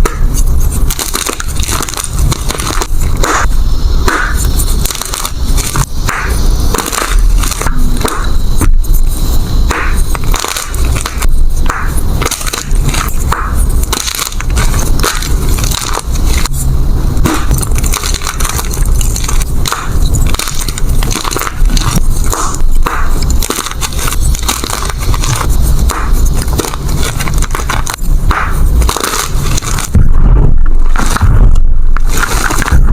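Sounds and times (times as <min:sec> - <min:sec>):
chalk blocks crunching: 0:00.0 - 0:30.1, 0:30.7 - 0:32.9
low rumble of handling: 0:11.1 - 0:32.9.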